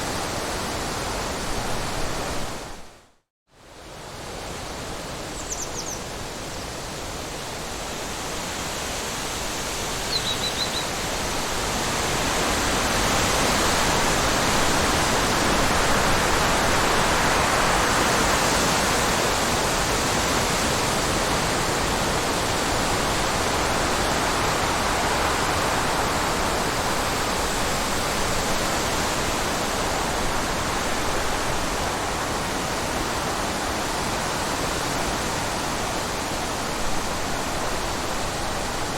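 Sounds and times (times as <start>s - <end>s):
wind blowing in gusts: 0.0s - 3.0s, 3.7s - 38.9s
bird chirp: 5.4s - 6.0s, 10.1s - 10.9s.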